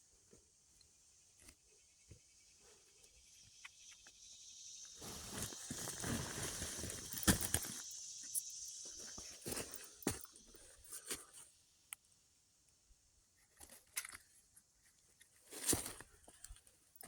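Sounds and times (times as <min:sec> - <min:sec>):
dry rustling and crackling: 0:05.0 - 0:08.4.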